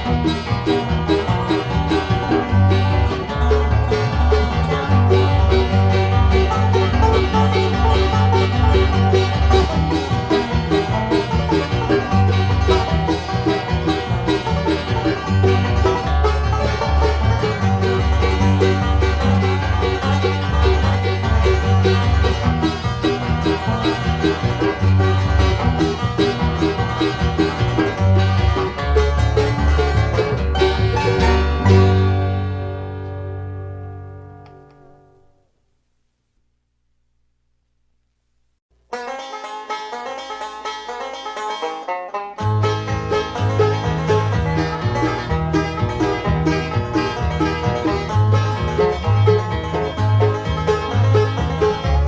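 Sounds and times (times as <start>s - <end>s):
bass line: 0.0s - 35.1s, 42.4s - 52.0s
banjo picking rolls: 0.0s - 35.5s, 38.7s - 52.0s
guitar: 0.0s - 35.6s, 38.9s - 52.0s.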